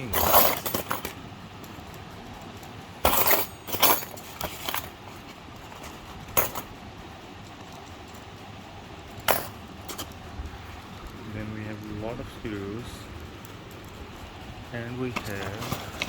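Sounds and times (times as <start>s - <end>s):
toy parts clinking and clattering: 0.0s - 5.0s.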